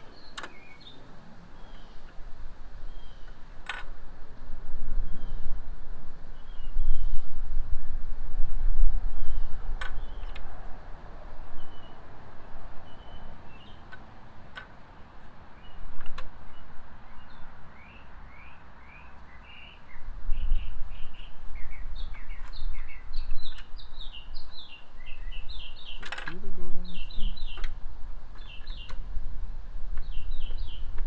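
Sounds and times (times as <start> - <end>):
small birds chirping: 0.0 - 3.9, 5.0 - 5.6, 6.2 - 7.4, 9.1 - 29.2, 29.8 - 31.0
sharp clicks: 0.2 - 0.9, 13.6 - 14.8, 25.9 - 26.4.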